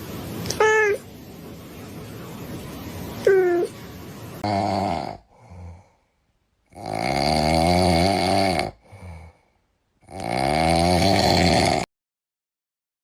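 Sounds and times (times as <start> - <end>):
loud snoring: 4.4 - 5.9, 6.7 - 9.4, 10.0 - 11.9
faint breath: 5.3 - 6.4, 8.8 - 9.8.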